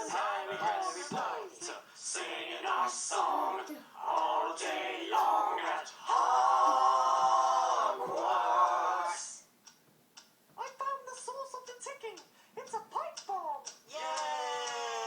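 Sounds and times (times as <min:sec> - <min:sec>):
young voices singing a chant: 0:00.0 - 0:09.4.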